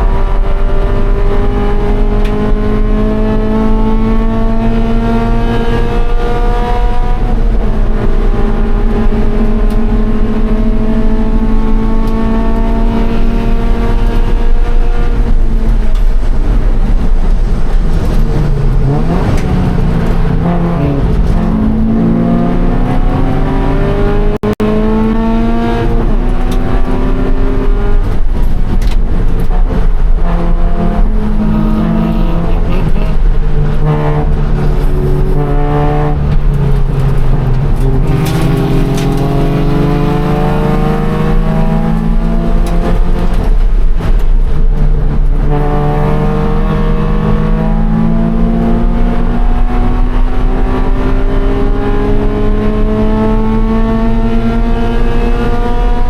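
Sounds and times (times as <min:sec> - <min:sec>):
car engine revving: 0:00.0 - 0:56.0.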